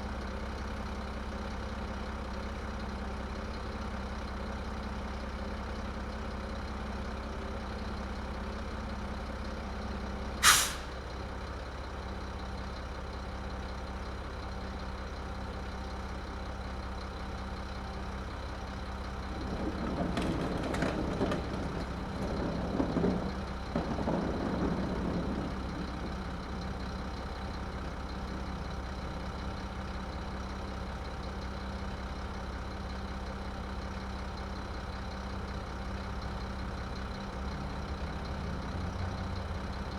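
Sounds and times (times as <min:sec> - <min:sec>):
truck engine idling: 0:00.0 - 0:39.9
air brake hiss: 0:10.4 - 0:11.0
truck machinery clanking: 0:19.0 - 0:31.2.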